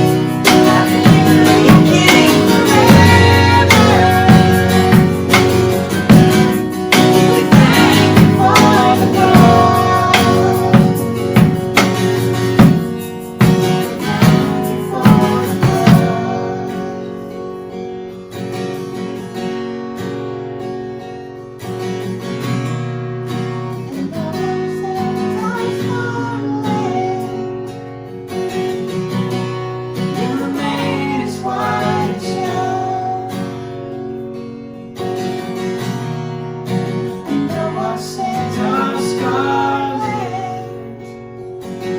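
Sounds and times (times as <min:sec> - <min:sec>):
band playing with strong beats: 0:00.0 - 0:16.3
acoustic guitar: 0:00.0 - 0:41.9.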